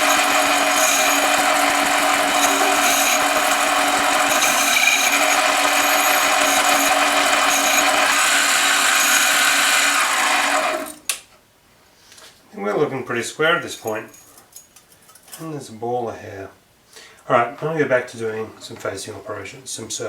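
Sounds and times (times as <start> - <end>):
lathe whining: 0.0 - 11.0.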